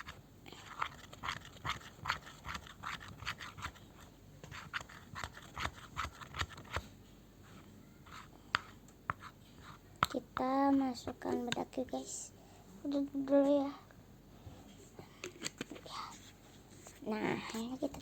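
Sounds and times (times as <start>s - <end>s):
slime scraping in a bowl: 0.0s - 6.8s, 8.1s - 9.8s.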